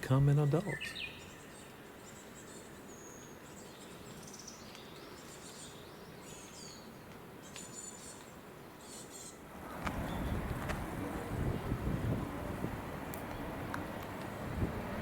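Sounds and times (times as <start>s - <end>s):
outdoor background hiss: 0.0s - 15.0s
bird chirps and calls: 0.2s - 8.2s.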